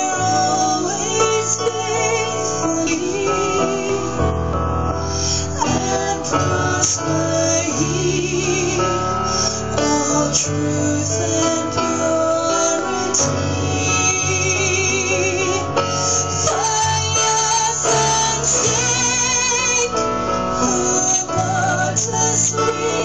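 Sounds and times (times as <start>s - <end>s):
instrumental accompaniment with bass: 0.0s - 23.0s
woman singing with vibrato: 9.7s - 23.0s.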